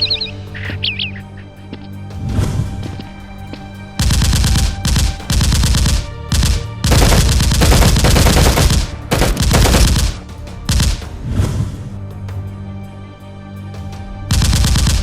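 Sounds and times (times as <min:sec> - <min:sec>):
automatic gunfire bursts: 0:04.0 - 0:11.0, 0:14.4 - 0:15.0.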